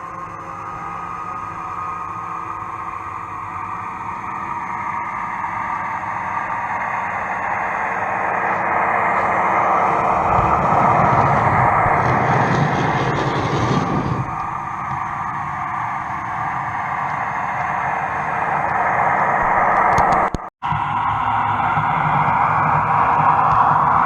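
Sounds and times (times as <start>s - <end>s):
model train running on track: 0.0s - 24.0s.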